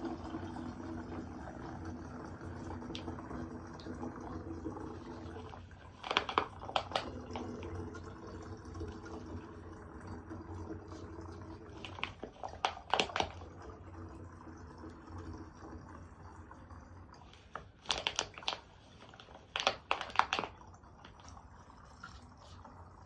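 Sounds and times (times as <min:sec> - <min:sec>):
camping gear clicking and rattling: 0:05.9 - 0:07.5, 0:17.4 - 0:20.5.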